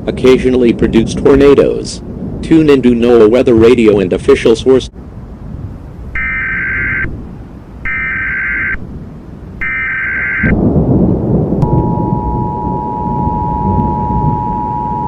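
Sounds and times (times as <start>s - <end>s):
thunder and rain rumble: 0.0s - 15.0s
warbling digital data bursts: 6.2s - 7.1s, 7.9s - 8.8s, 9.6s - 10.6s
two-tone attention signal: 11.6s - 15.0s.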